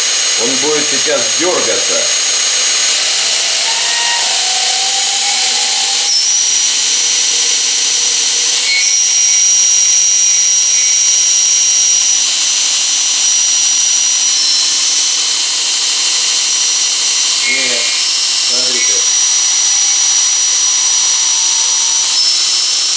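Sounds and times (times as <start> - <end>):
high-pitched whistle: 0.0 - 7.8, 8.5 - 15.4, 16.0 - 22.9
belt grinder motor hissing: 0.0 - 22.9.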